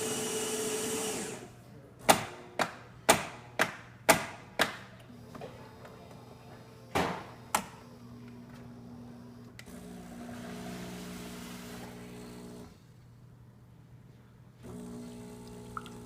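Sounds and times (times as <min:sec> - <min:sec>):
espresso machine humming: 0:08.0 - 0:12.8, 0:14.6 - 0:16.0.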